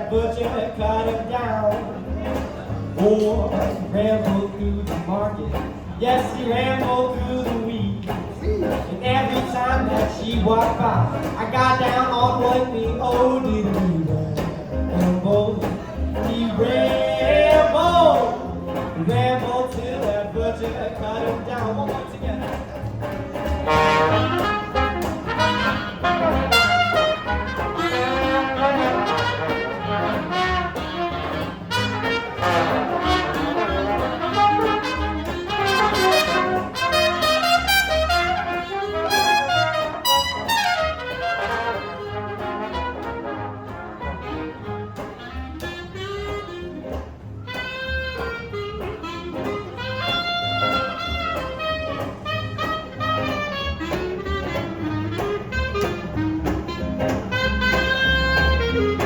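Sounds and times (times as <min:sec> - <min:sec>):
bass: 0:00.0 - 0:59.0
steady beat: 0:20.8 - 0:59.0
trumpet and brass horns: 0:23.4 - 0:59.0.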